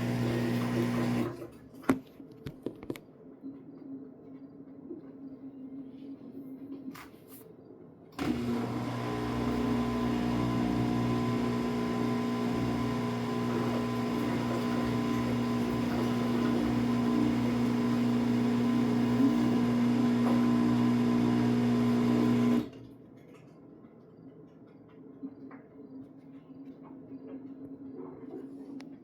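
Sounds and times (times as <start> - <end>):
washing machine humming: 0.0 - 1.8, 8.2 - 23.0.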